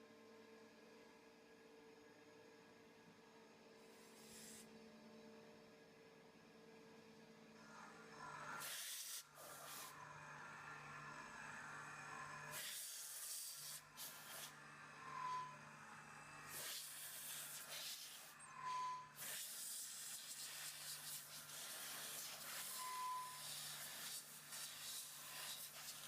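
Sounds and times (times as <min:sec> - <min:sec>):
machine hum with hiss: 0:03.8 - 0:04.8, 0:07.6 - 0:26.0.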